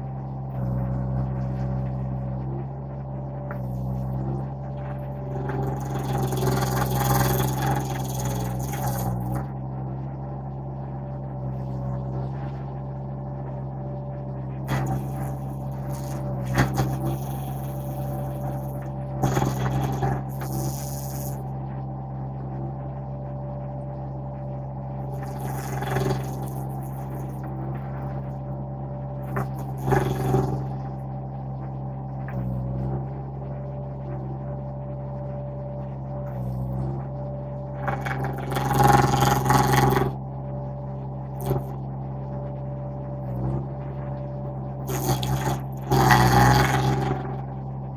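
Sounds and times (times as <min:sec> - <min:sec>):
skid steer engine running: 0:00.0 - 0:09.8, 0:44.8 - 0:47.9
stump grinder grinding: 0:37.9 - 0:40.1, 0:44.9 - 0:47.2.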